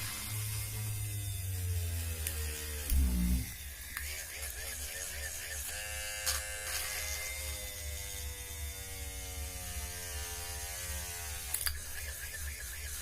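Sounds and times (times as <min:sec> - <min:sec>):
small drill motor whining: 0:00.3 - 0:04.0, 0:05.7 - 0:11.6.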